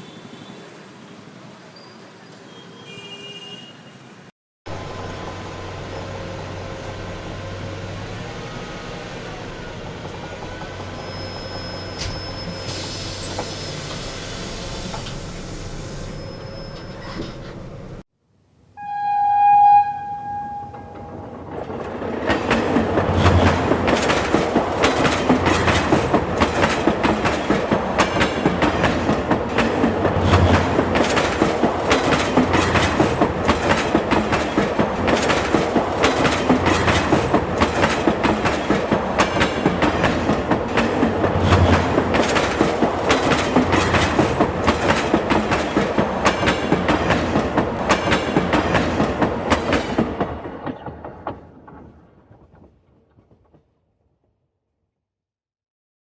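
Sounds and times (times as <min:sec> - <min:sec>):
train horn: 0:18.8 - 0:21.4
train wheels clattering on rails: 0:20.8 - 0:53.8.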